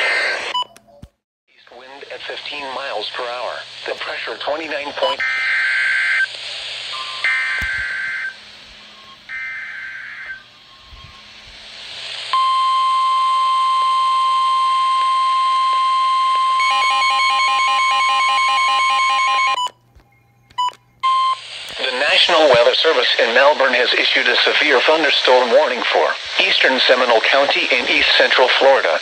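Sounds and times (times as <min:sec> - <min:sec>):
steady warning alarm tone: 0:06.9 - 0:21.4.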